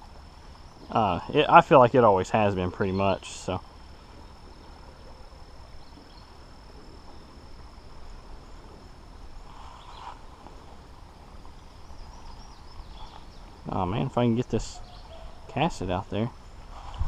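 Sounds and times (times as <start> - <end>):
insects trilling: 0.0 - 17.0
low outdoor rumble: 0.0 - 17.0
soft rustle: 8.3 - 13.6, 16.5 - 17.0.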